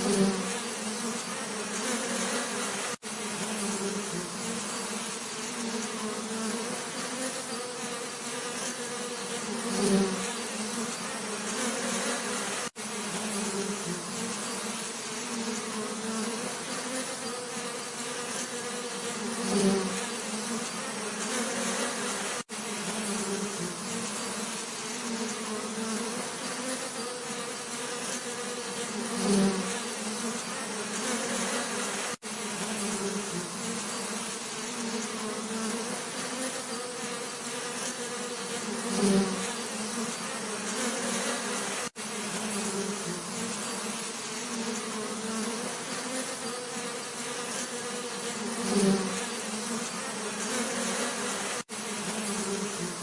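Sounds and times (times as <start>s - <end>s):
bees buzzing drone: 0.0s - 53.0s
single bee buzzing close: 0.0s - 53.0s.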